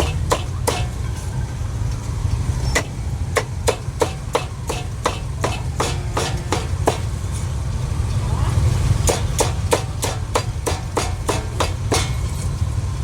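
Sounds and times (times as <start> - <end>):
cleaver chopping meat: 0.0 - 1.0, 2.8 - 7.1, 9.1 - 12.2.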